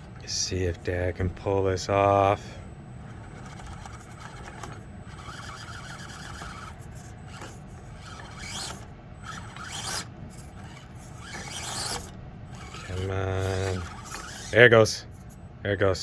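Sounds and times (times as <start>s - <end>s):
small electric motor humming: 2.8s - 15.4s.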